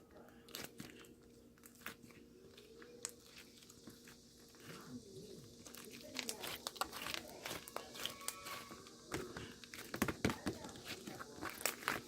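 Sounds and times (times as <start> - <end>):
slime crackling when squeezed: 5.6 - 10.0.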